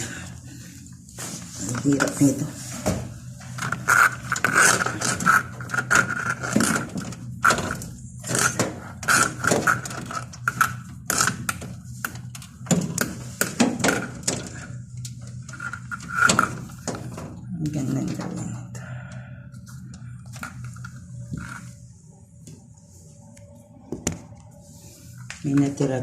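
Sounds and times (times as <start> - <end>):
steady low hum: 0.0 - 26.0
clattering and scraping of hard parts: 1.2 - 18.7.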